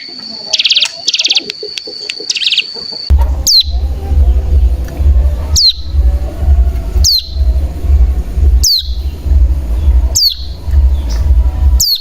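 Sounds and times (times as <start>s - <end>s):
loud low rumble: 3.1s - 12.0s.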